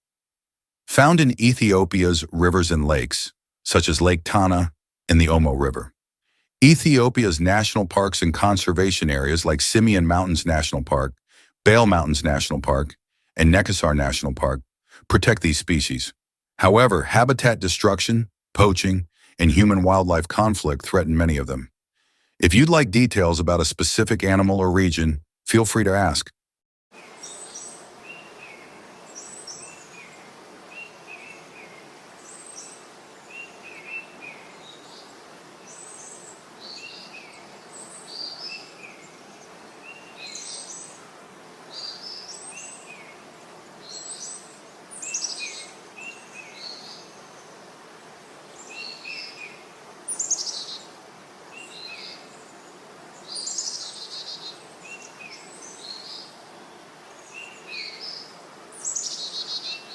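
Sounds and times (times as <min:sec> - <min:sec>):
steady background hiss: 0:01.0 - 0:03.1, 0:06.6 - 0:11.1, 0:11.7 - 0:12.8, 0:13.4 - 0:16.0, 0:27.0 - 0:59.9
birds chirping and calling: 0:35.7 - 0:41.0, 0:41.7 - 0:43.2, 0:43.8 - 0:47.4, 0:48.6 - 0:50.9, 0:53.2 - 0:56.4, 0:57.1 - 0:59.9.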